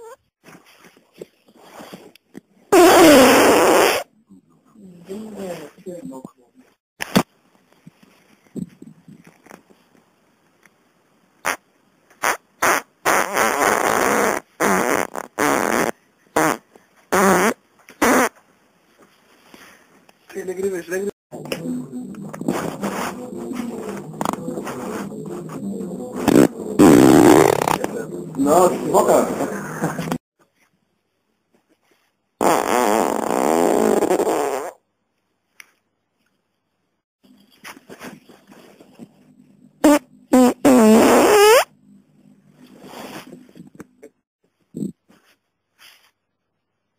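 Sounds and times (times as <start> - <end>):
person farting: 2.7 - 4.1, 12.2 - 18.4, 26.1 - 28.0, 32.4 - 34.8, 39.8 - 41.7.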